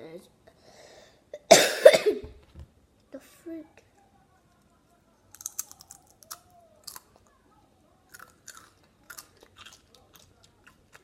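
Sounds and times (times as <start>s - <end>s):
chips being crunched and chewed: 5.3s - 7.4s, 8.1s - 11.0s.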